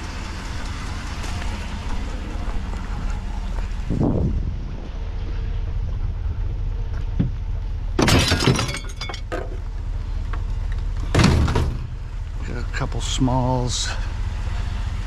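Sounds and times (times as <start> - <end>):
steady low rumble: 0.0 - 15.0
scrap metal clattering onto pile: 8.0 - 9.4.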